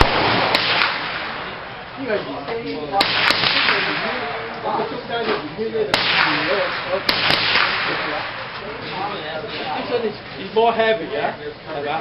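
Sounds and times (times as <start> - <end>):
gunshots with echo: 0.0 - 2.2, 2.9 - 4.8, 5.9 - 8.9.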